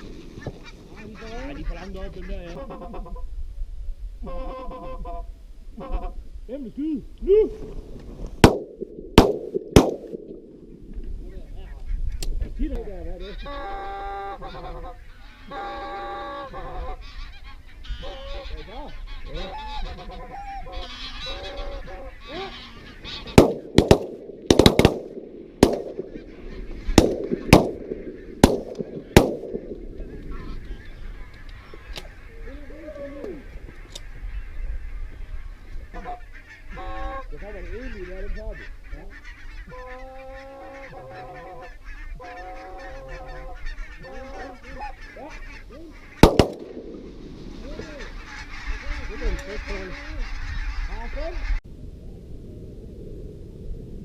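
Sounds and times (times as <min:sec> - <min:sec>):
geese honking: 0:00.4 - 0:03.2, 0:13.0 - 0:51.6
shotgun fire with echo: 0:08.4 - 0:10.4, 0:23.4 - 0:26.3, 0:26.9 - 0:29.9, 0:46.2 - 0:47.3.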